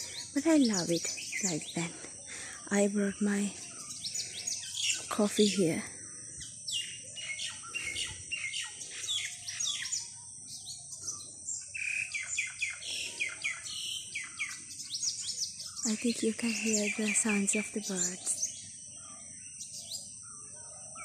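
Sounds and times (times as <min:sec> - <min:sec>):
songbirds chirping: 0:00.0 - 0:21.0.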